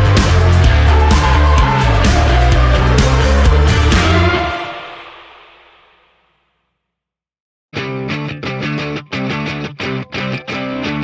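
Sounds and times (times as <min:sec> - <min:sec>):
loud rock music: 0:00.0 - 0:05.8.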